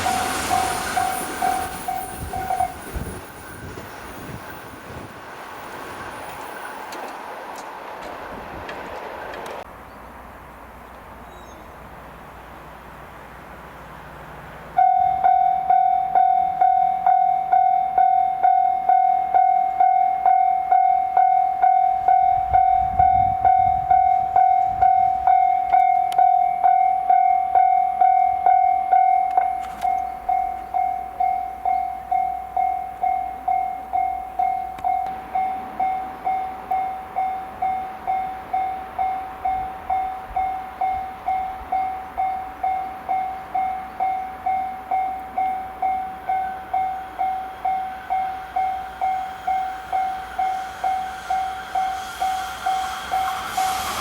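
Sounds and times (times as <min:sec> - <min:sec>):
level crossing warning bell: 0:00.0 - 0:05.7, 0:14.7 - 0:53.6.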